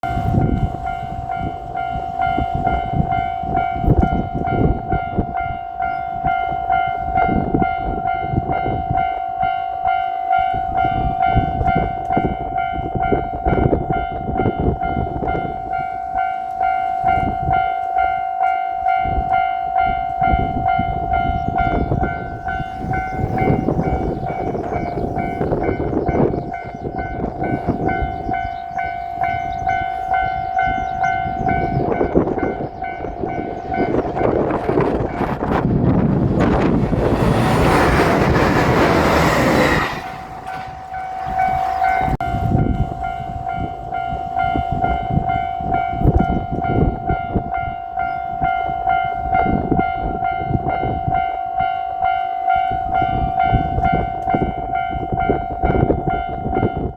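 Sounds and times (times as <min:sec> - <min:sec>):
level-crossing warning bell ringing: 0:00.0 - 0:56.9
low rumbling: 0:35.4 - 0:43.0.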